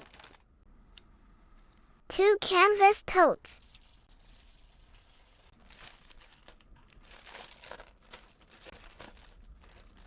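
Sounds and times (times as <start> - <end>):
plastic packaging crinkling: 0.0 - 0.5, 3.6 - 10.0.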